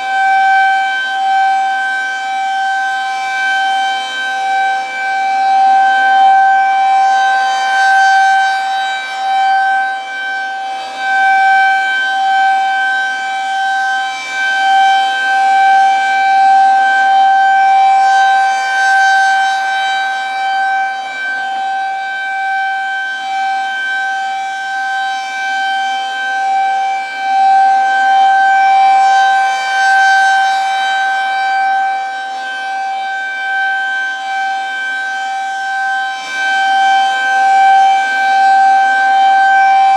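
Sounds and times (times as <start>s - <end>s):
outdoor warning siren steady tone: 0.0s - 39.9s.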